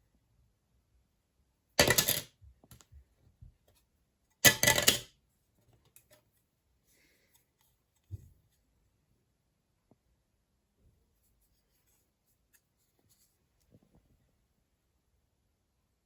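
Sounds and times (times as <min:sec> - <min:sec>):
metal card clattering: 0:01.8 - 0:02.3, 0:04.5 - 0:05.0.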